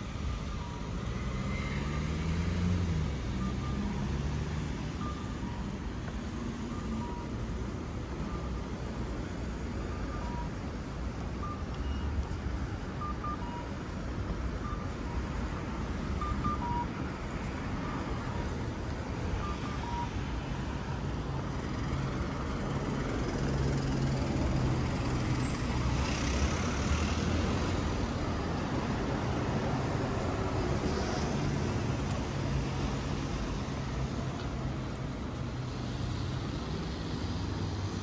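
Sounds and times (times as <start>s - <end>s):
road traffic rumble: 0.0s - 38.0s
short electronic beeps: 9.8s - 10.6s, 11.3s - 13.8s, 14.6s - 15.3s, 16.2s - 17.0s, 19.3s - 20.3s.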